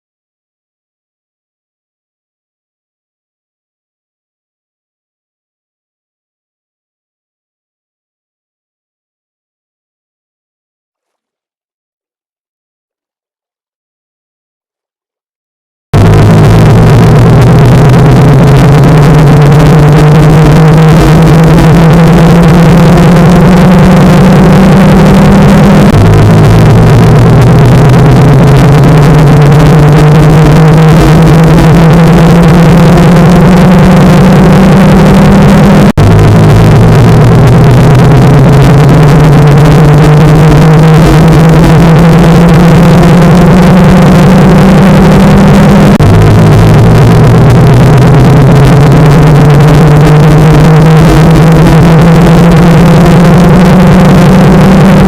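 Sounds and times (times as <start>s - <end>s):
loud distorted droning noise: 16.0s - 55.0s
rising high tones: 16.0s - 55.0s.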